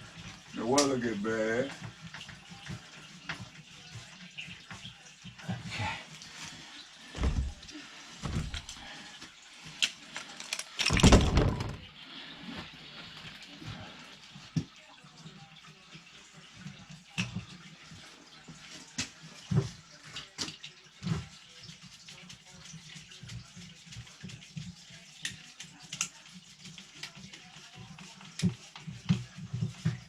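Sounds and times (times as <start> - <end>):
water running and splashing: 0.0 - 30.0
knocks and clunks of handling: 7.2 - 8.8, 10.8 - 11.9.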